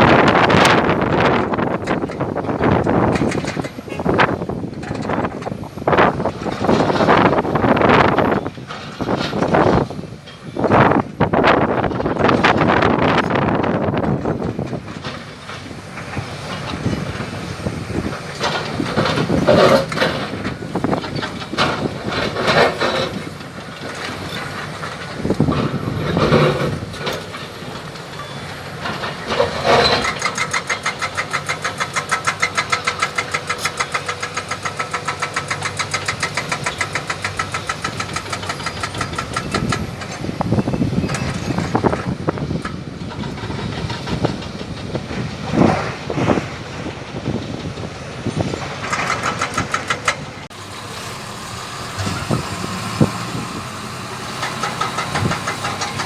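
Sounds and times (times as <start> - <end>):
excavator diesel engines revving: 0.0 - 56.0
hydraulic breaker hammering rock: 29.2 - 56.0.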